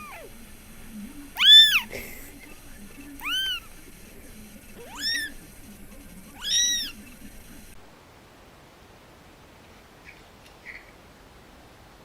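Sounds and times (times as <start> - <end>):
cat meowing: 0.0 - 0.3, 1.4 - 1.9, 3.2 - 3.6, 4.8 - 5.4, 6.4 - 7.0.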